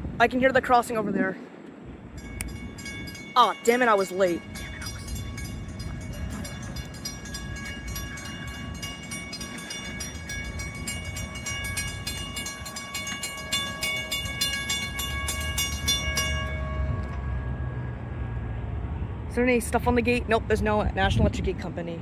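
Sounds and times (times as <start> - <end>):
railroad crossing bells ringing: 2.0 - 19.0
low rumble: 4.3 - 20.0.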